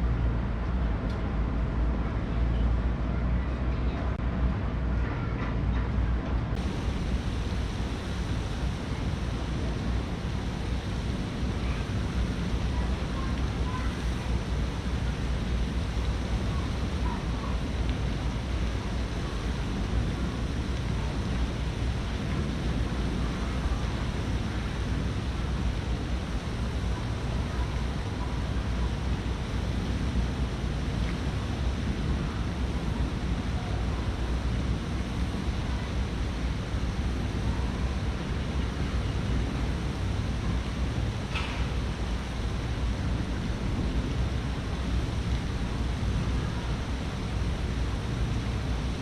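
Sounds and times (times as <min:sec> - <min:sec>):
heavy low rumble: 0:06.5 - 0:37.6.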